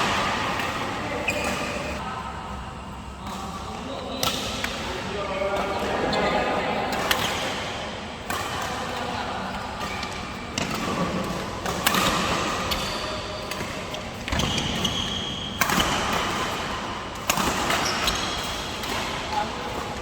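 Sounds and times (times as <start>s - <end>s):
shuttlecock struck by rackets: 9.7s - 15.0s, 15.6s - 19.2s.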